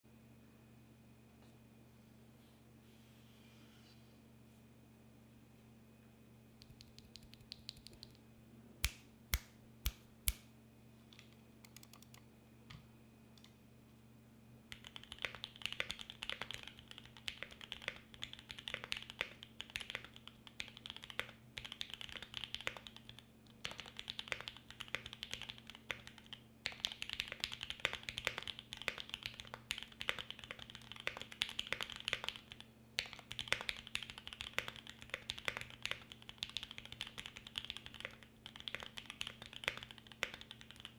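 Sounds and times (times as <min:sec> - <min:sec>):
faint steady hum: 0:00.1 - 0:40.9
mechanical keyboard typing: 0:06.6 - 0:08.2, 0:11.6 - 0:12.2, 0:14.7 - 0:40.9
sharp keyboard clicks: 0:06.6 - 0:08.2, 0:11.6 - 0:12.2, 0:14.7 - 0:40.9.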